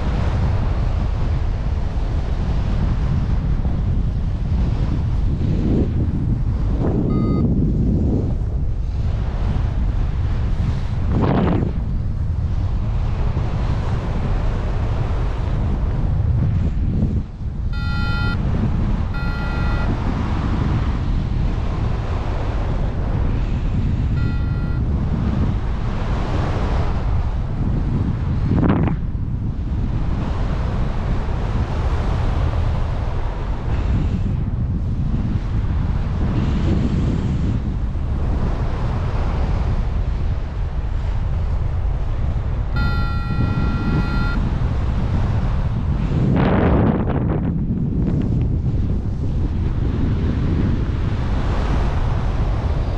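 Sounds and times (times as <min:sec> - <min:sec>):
wind buffeting microphone: 0:00.0 - 0:52.9
short electronic beeps: 0:07.0 - 0:07.5, 0:17.8 - 0:18.4, 0:19.1 - 0:20.0, 0:24.2 - 0:24.9, 0:42.8 - 0:44.5.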